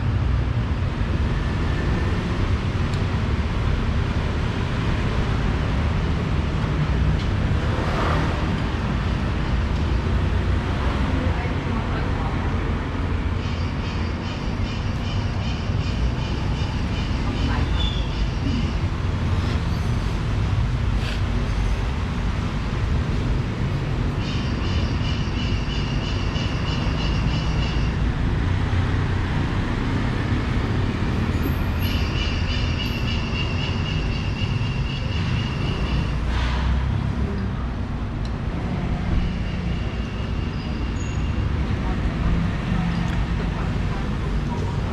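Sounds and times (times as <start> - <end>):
low rumble of traffic: 0.0 - 44.9.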